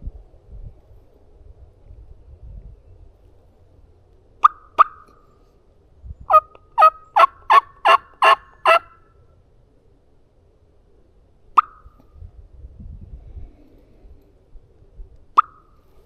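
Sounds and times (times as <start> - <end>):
turkey yelps: 4.4 - 5.1, 6.3 - 9.0.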